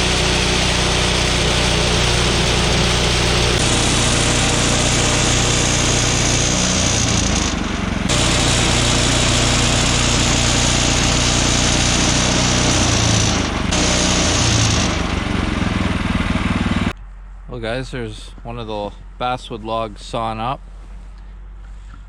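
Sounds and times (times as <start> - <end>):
saw blade hissing through log: 0.0 - 15.2
engine running steadily: 0.0 - 17.4.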